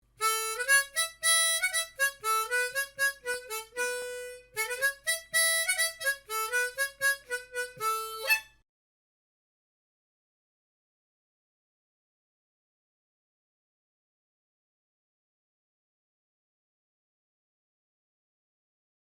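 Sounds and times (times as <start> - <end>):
solo instrumental melody: 0.2 - 8.6.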